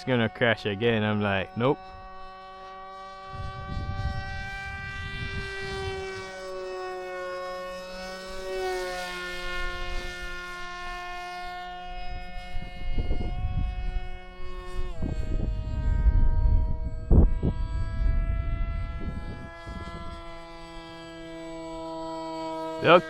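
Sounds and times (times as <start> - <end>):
model plane motor whine: 0.0 - 23.0
wind buffeting microphone: 3.2 - 6.8, 9.3 - 23.0.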